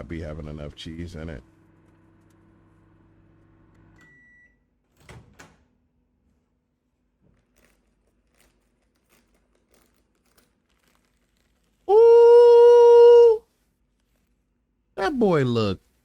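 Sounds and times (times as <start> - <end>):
microwave oven humming: 0.3 - 4.8
microwave beep: 3.8 - 4.7.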